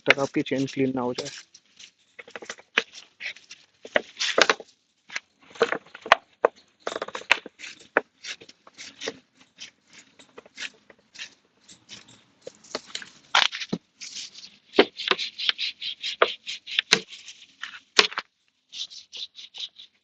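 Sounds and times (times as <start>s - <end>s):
scrubbing chain: 0.0s - 17.9s.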